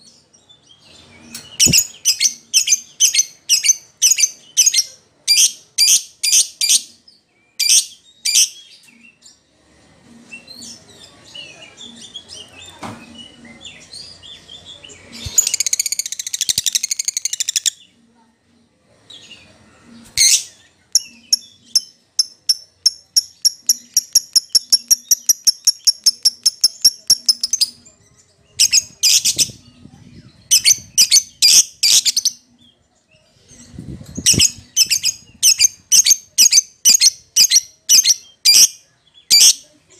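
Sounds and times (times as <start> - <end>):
lovebird chirping: 1.2 - 7.0, 7.6 - 9.0, 11.6 - 17.9, 20.0 - 29.8, 30.4 - 32.6, 33.5 - 39.7.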